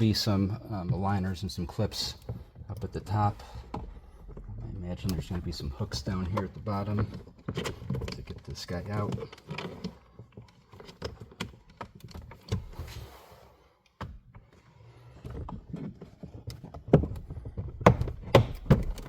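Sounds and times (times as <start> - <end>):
plastic clicks and knocks: 15.4 - 19.0.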